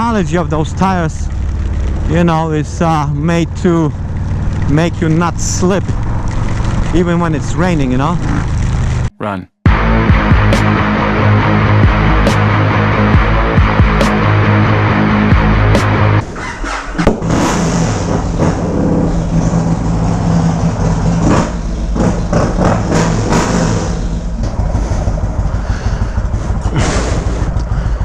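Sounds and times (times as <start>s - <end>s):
motorcycle engine running: 0.0s - 9.1s, 9.7s - 16.2s, 17.1s - 28.0s
music: 9.7s - 16.3s.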